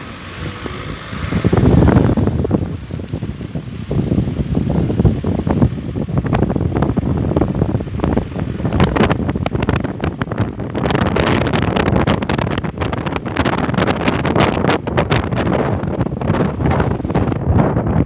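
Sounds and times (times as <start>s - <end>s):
gusty wind buffeting microphone: 0.0s - 18.0s.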